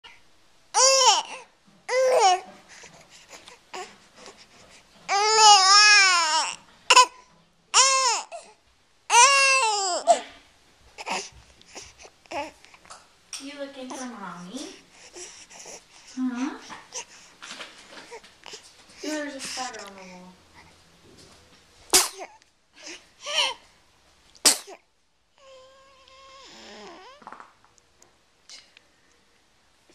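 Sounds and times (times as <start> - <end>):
baby whining: 0.8 - 4.4, 5.1 - 10.3, 11.0 - 12.8, 22.0 - 23.6, 25.4 - 27.3
sneezing: 21.9 - 22.4, 24.4 - 24.8.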